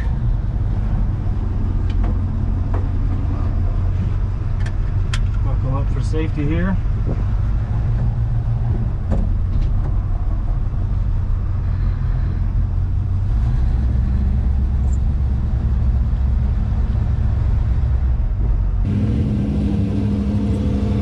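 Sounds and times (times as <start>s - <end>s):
pickup engine and road rumble: 0.0s - 21.0s.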